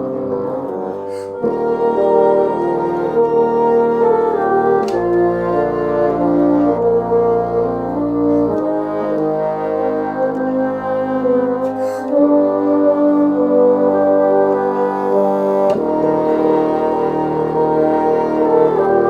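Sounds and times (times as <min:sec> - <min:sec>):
bassoon ensemble playing carol: 0:00.0 - 0:19.0.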